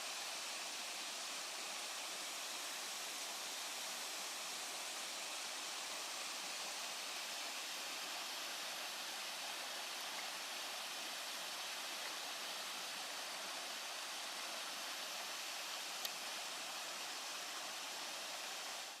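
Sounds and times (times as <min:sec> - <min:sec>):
small click: 0:16.0 - 0:16.2.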